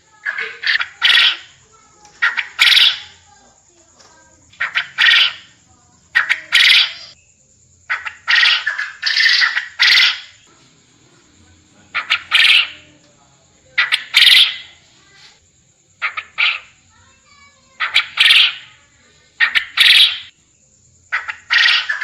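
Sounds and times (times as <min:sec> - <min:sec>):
quail calling: 0:00.1 - 0:03.2, 0:04.5 - 0:07.2, 0:07.9 - 0:10.5, 0:11.9 - 0:13.0, 0:13.8 - 0:14.8, 0:16.0 - 0:16.8, 0:17.7 - 0:18.8, 0:19.4 - 0:20.3, 0:21.1 - 0:22.0.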